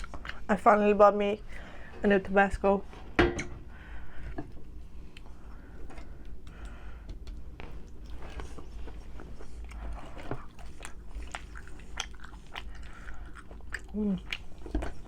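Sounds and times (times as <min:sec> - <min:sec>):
person chewing food: 0:00.0 - 0:00.5, 0:04.2 - 0:15.0.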